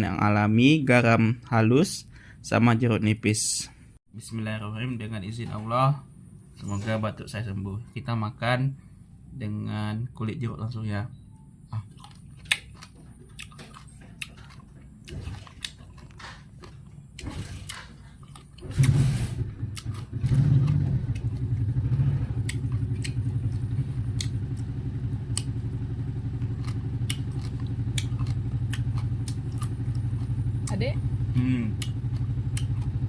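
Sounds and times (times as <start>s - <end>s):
chewing crunchy lime: 11.6s - 19.0s, 19.6s - 33.0s
engine idling: 18.6s - 33.0s.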